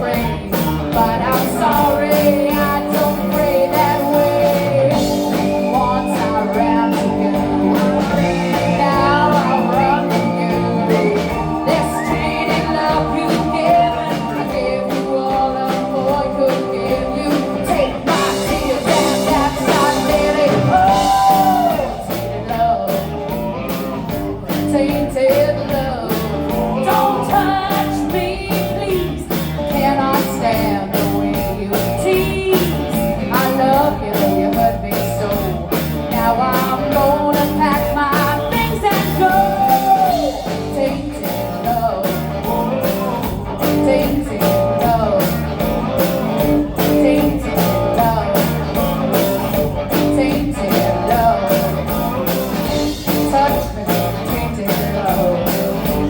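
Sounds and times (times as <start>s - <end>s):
drums beating: 0.0s - 56.0s
electric guitar: 0.0s - 56.0s
lead singer: 0.0s - 56.0s
rock band playing: 0.0s - 56.0s.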